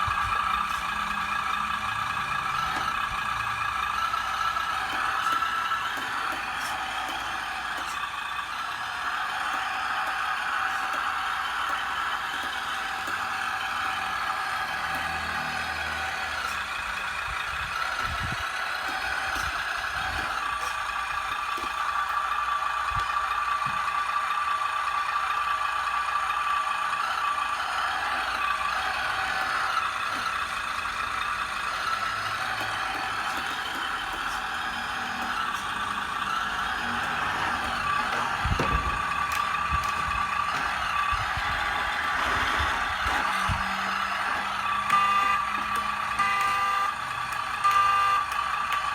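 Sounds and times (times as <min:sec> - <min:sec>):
electric motors whining: 0:00.0 - 0:48.9.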